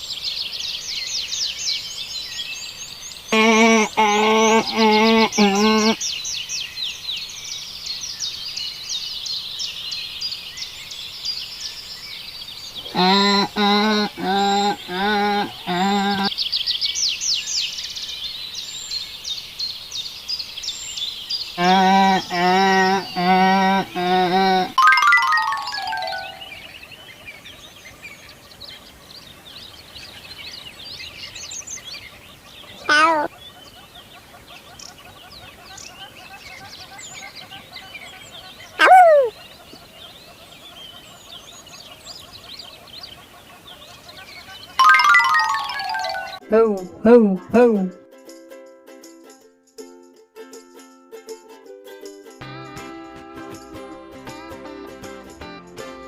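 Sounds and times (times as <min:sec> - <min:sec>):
small birds chirping: 0:00.0 - 0:48.0
repeated animal call notes: 0:03.3 - 0:06.0, 0:12.8 - 0:16.3, 0:21.6 - 0:27.1, 0:32.7 - 0:34.0, 0:34.7 - 0:39.7, 0:43.6 - 0:48.0
quick high chirping: 0:32.9 - 0:33.3, 0:38.8 - 0:39.3.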